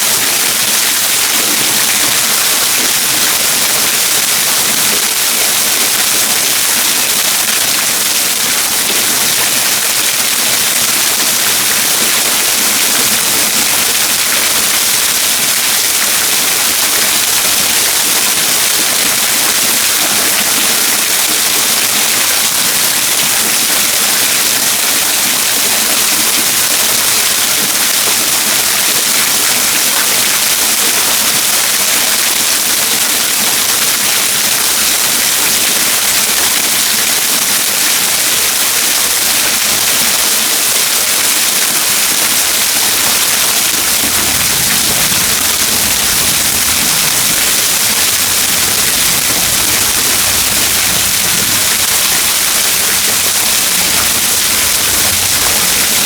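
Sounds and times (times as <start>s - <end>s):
waterfall roaring: 0.0s - 56.0s
deep rumble: 43.6s - 56.0s.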